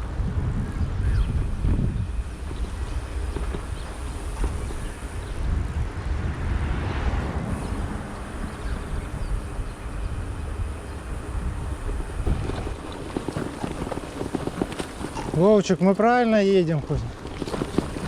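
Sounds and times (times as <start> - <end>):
wind buffeting microphone: 0.0 - 18.0
car passing: 2.1 - 15.1.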